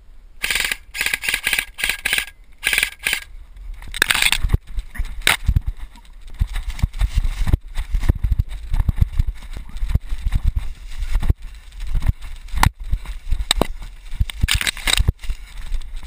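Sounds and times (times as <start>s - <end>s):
airsoft gun firing bursts: 0.4s - 3.3s
running footsteps: 0.4s - 16.0s.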